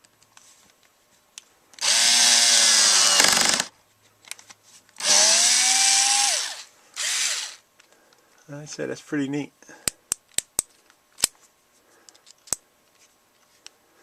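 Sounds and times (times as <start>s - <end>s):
impact driver motor whine: 1.8s - 3.7s, 5.0s - 7.6s.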